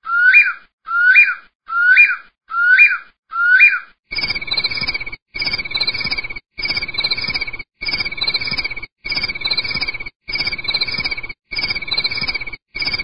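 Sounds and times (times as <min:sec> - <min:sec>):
rising whistled bird call: 0:00.0 - 0:05.0
trilled bird call: 0:00.0 - 0:13.0.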